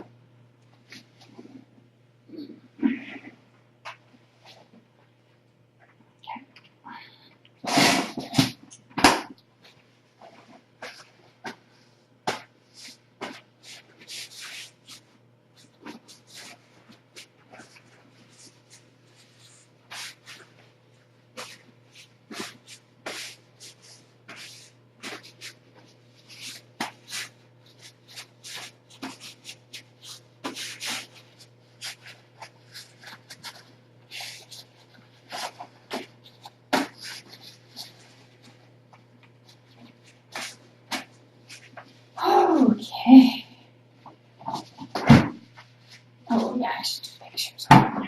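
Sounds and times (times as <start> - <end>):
low electrical hum: 0.0 - 48.0
kittens scratching and rustling: 12.7 - 42.1.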